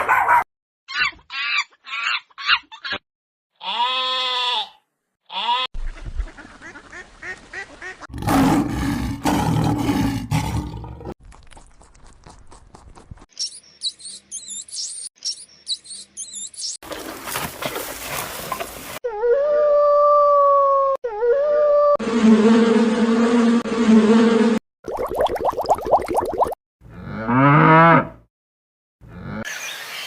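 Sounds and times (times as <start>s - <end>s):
deep roar-like call: 8.1s - 11.2s.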